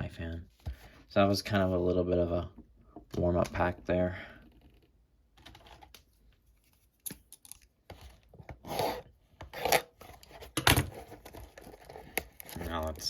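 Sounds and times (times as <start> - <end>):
card packaging crinkling and tearing: 10.2 - 13.0.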